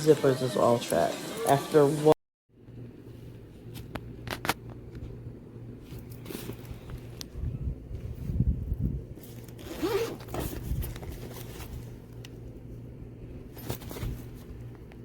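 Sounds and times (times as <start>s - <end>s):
zipper rasping: 9.2s - 11.8s.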